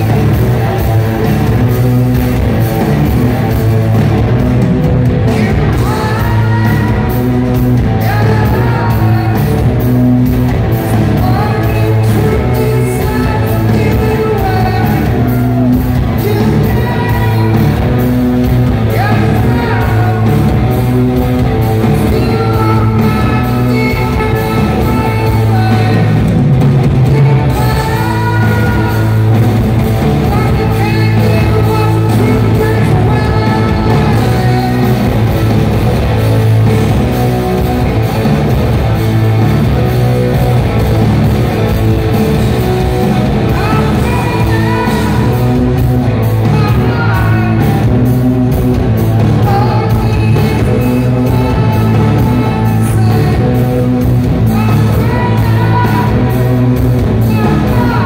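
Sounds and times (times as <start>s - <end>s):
live rock band playing: 0.0s - 58.0s
male lead vocal singing: 5.1s - 9.8s, 10.7s - 35.5s, 42.4s - 48.1s, 49.2s - 58.0s.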